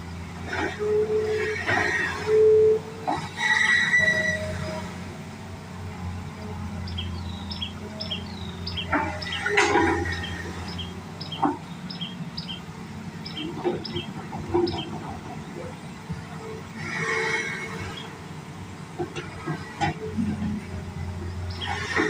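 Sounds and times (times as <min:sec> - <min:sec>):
excavator diesel engine running: 0:00.0 - 0:22.0
metallic clanking and scraping: 0:08.7 - 0:11.6.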